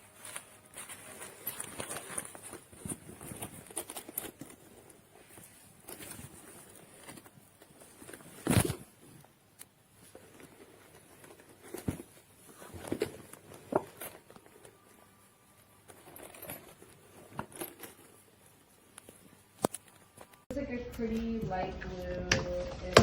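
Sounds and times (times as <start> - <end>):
light rustling: 0.0 - 9.3.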